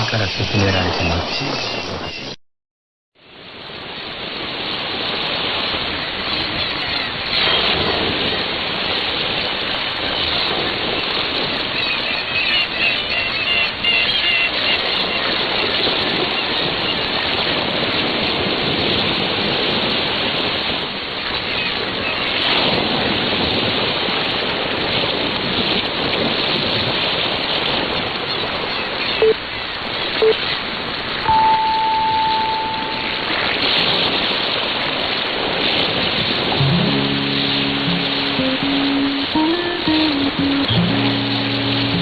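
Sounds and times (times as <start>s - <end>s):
ocean surf over am radio: 0.0s - 2.4s, 31.3s - 33.7s, 36.6s - 42.0s
radio time signal beeps: 0.0s - 2.4s, 31.3s - 33.5s.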